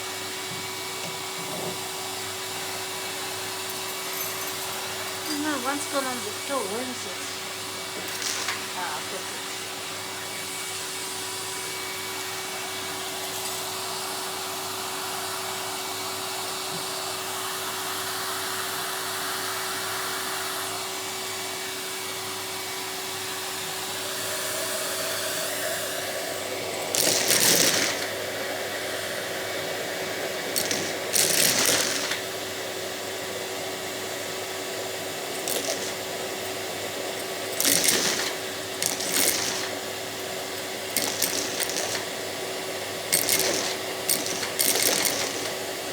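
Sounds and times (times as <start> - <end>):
vacuum cleaner running: 0.0 - 45.9
seeds rattling through nozzle: 26.9 - 28.1, 30.6 - 32.2, 35.4 - 36.1, 37.6 - 39.8, 40.9 - 42.1, 43.1 - 45.6.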